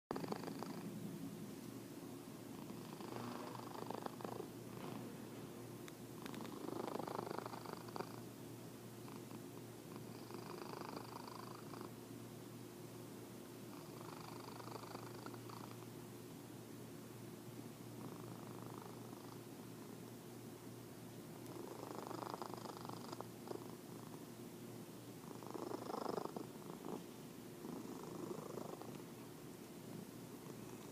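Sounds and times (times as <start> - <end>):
cat snoring and purring: 0.1 - 0.9, 2.5 - 5.1, 6.2 - 8.3, 9.0 - 12.0, 13.7 - 15.8, 18.0 - 19.4, 21.4 - 24.2, 25.2 - 29.0, 30.4 - 30.9.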